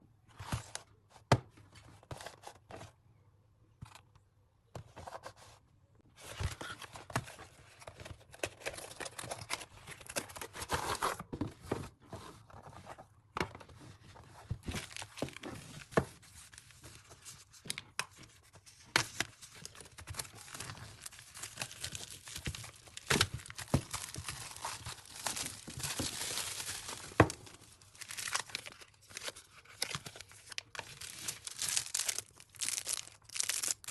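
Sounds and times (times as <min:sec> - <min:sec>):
plastic packaging crinkling: 0:19.6 - 0:33.9.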